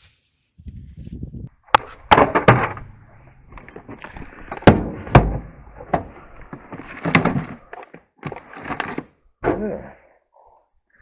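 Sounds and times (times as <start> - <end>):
rummaging: 5.9 - 9.2.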